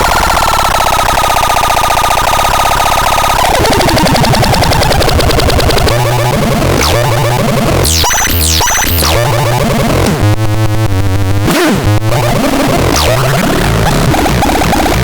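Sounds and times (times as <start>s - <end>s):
harsh buzzing warbling synth: 0.0s - 15.0s
synthesizer pitch sweeps: 0.0s - 15.0s
synthesizer pulsing bass: 0.0s - 15.0s.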